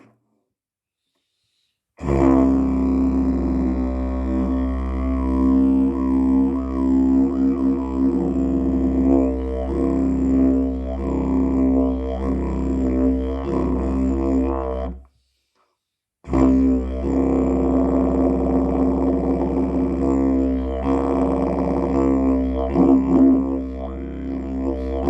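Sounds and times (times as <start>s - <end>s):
didgeridoo drone: 2.0s - 15.0s, 16.3s - 25.0s.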